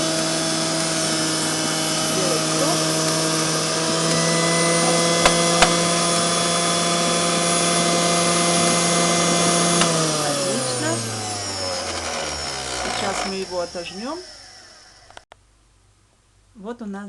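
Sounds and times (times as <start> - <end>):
kitchen appliance motor grinding: 0.0 - 15.2
sharp clicks: 5.2 - 5.8.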